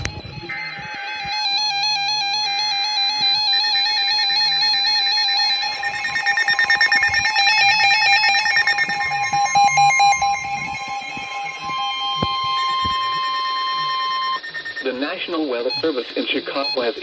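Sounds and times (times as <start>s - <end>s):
warbling electronic alert tones: 0.0s - 16.0s
fast pulsing beep: 0.0s - 17.0s
screeching data bursts: 0.0s - 17.0s
steady alert tone: 3.6s - 16.0s.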